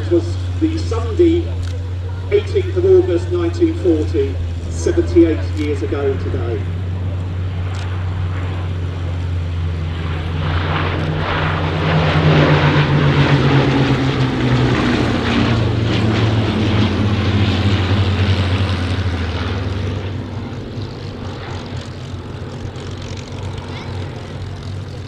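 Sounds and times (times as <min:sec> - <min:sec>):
propeller aircraft passing by: 0:00.0 - 0:25.0.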